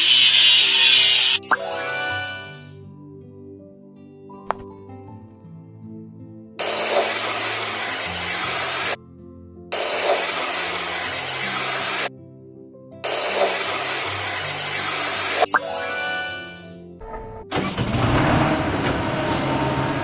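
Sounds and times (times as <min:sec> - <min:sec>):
hissing spray bursts: 0:00.0 - 0:01.4, 0:06.6 - 0:09.0, 0:09.8 - 0:12.1, 0:13.1 - 0:15.5
soft background music: 0:01.4 - 0:18.8.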